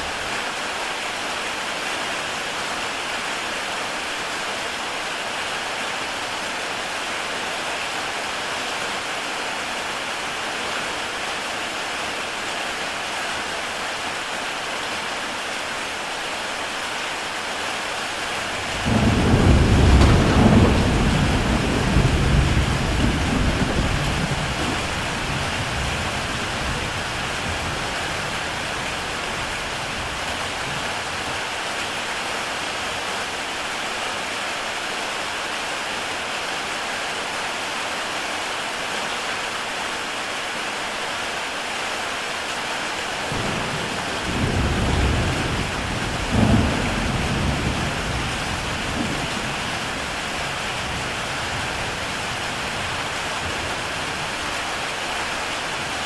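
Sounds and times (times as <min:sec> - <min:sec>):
heavy rain on a tile roof: 0:00.0 - 0:56.0
thunder rumbling: 0:18.6 - 0:28.7, 0:43.3 - 0:53.8.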